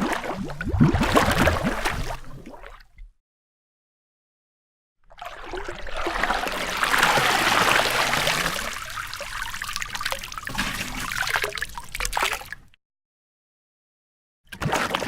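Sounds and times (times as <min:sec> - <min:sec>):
water drips and splashes: 0:05.1 - 0:12.8
water running and trickling: 0:06.9 - 0:12.7.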